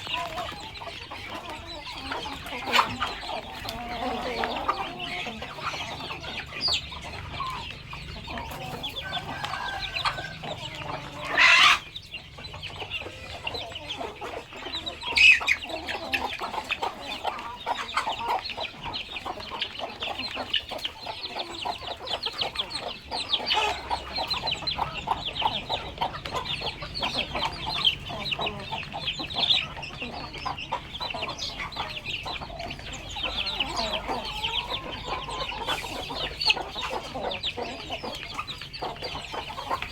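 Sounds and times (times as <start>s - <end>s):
chickens clucking: 0.0s - 39.9s
loud chicken calls: 0.0s - 39.9s.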